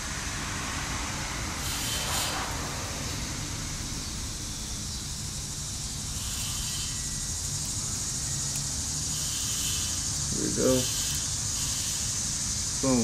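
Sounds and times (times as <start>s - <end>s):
low rumble: 0.0s - 6.2s
constant hiss: 0.0s - 13.0s.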